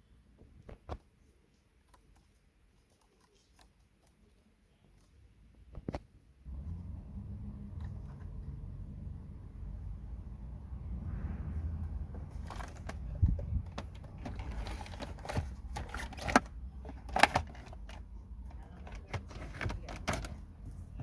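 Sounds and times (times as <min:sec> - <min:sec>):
low steady hum: 0:00.0 - 0:21.0
hands handling car light parts: 0:12.1 - 0:20.8.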